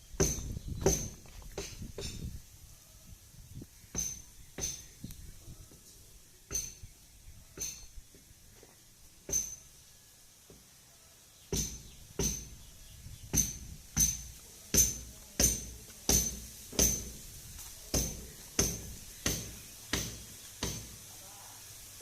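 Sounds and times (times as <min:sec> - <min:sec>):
hammer striking metal: 0:03.9 - 0:04.9, 0:06.5 - 0:06.9, 0:07.6 - 0:08.0, 0:09.3 - 0:09.7, 0:11.5 - 0:12.6, 0:13.4 - 0:17.2, 0:17.9 - 0:21.0.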